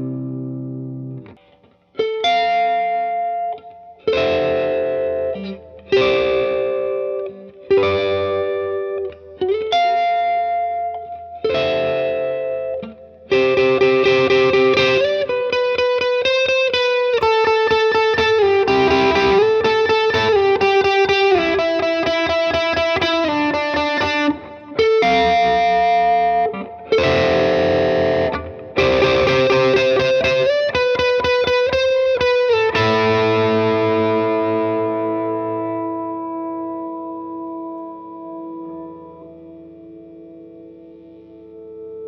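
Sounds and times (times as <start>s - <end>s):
overdriven electric guitar chords: 0.0s - 42.0s.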